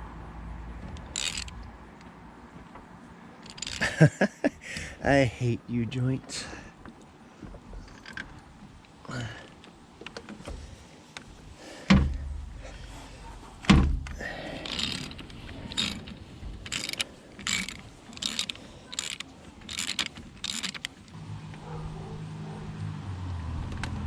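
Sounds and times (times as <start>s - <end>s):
ratchet wrench clunks: 0.9s - 1.6s, 13.6s - 21.0s
quick ratcheting strokes: 1.0s - 1.6s, 3.4s - 4.0s, 14.5s - 21.2s.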